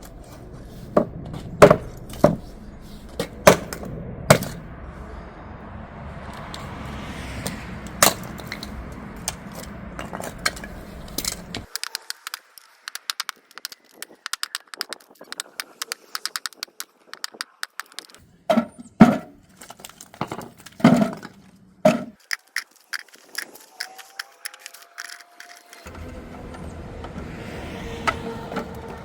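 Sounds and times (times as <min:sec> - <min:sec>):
wood being chopped: 0:20.3 - 0:22.2.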